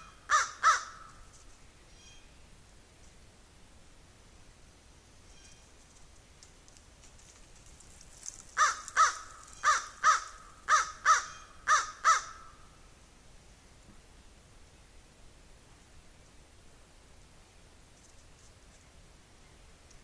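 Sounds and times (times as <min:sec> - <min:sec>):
crow cawing: 0:00.3 - 0:01.1, 0:08.6 - 0:12.6.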